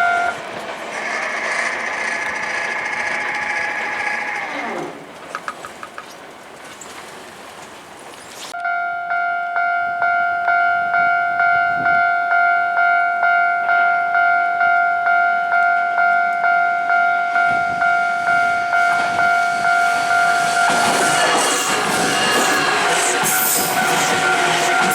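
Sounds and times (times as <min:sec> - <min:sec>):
level crossing warning bell ringing: 0:00.0 - 0:00.4, 0:08.6 - 0:24.9
train rumble: 0:00.0 - 0:07.9, 0:15.4 - 0:24.9.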